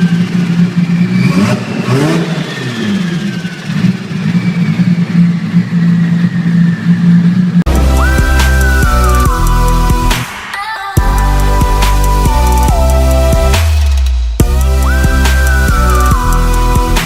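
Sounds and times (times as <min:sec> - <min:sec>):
turbo whistle: 0:00.0 - 0:10.2, 0:11.4 - 0:17.0
car engine revving: 0:00.0 - 0:10.3.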